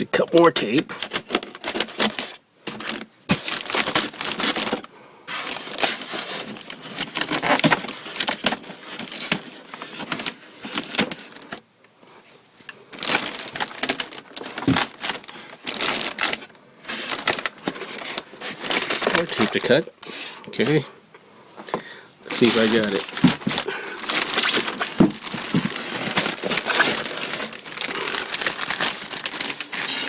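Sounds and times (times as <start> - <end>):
cardboard box rustling and scraping: 1.0 - 11.5, 13.0 - 20.8, 22.4 - 30.0
packing tape being cut: 22.3 - 30.0.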